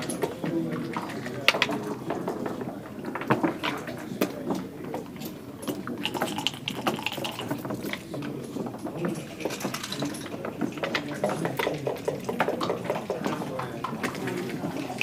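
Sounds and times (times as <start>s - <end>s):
murmur of voices: 0.0s - 15.0s
backgammon checkers and dice clattering: 5.0s - 15.0s.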